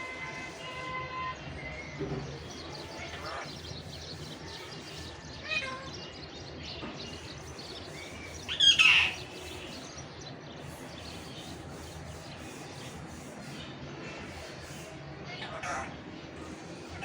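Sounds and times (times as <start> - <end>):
parakeet calling and squawking: 2.4 - 4.3, 7.9 - 9.9, 14.4 - 17.0.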